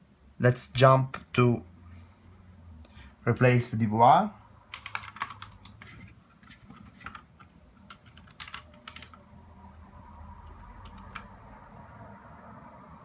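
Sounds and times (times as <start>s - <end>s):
small parts clicking and tapping: 4.7s - 9.2s, 10.4s - 11.3s.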